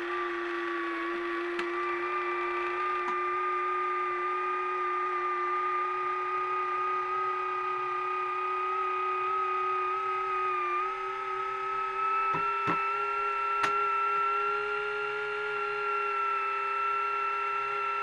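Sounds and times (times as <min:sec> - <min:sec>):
small electric motor whining: 0:00.0 - 0:18.0.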